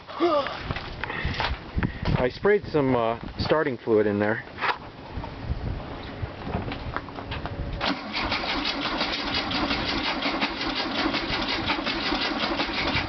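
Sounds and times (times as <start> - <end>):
starter motor cranking engine: 7.8 - 13.0.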